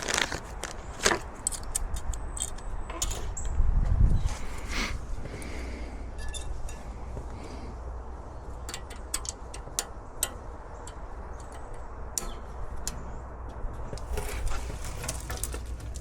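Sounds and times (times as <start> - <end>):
metallic clicks and taps: 8.5 - 14.1.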